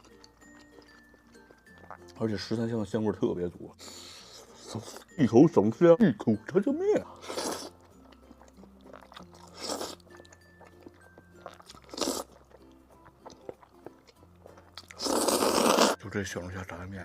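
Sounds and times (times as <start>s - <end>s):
person chewing food: 0.0s - 2.2s, 7.0s - 16.0s
quiet background music: 0.0s - 17.0s.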